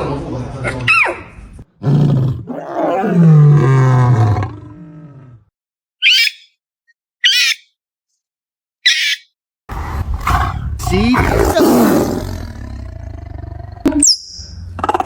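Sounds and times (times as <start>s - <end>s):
animal deep roar: 1.8s - 5.5s, 9.7s - 15.0s
high squeaky calls: 6.0s - 6.6s, 7.2s - 7.7s, 8.8s - 9.3s.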